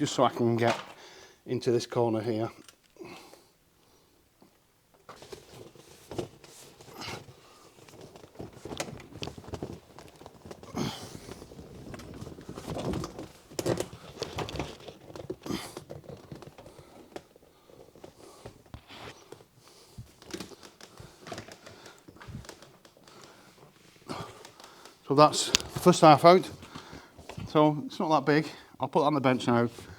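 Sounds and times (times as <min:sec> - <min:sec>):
fabric panel rustling and scraping: 0:05.0 - 0:27.7.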